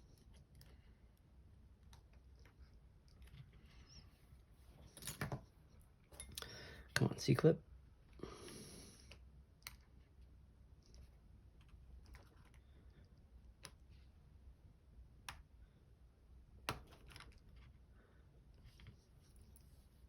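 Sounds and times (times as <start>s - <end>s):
soft rustle: 17.3s - 20.0s.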